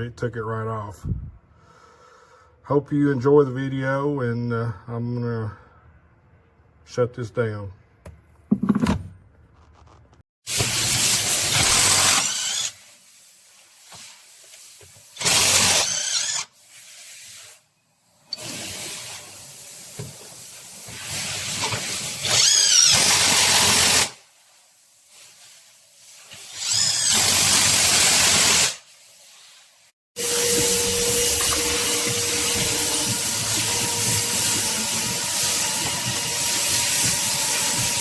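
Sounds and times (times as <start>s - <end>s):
impact wrench bursts: 10.7s - 12.8s, 15.2s - 16.5s, 22.2s - 24.2s, 26.6s - 28.8s.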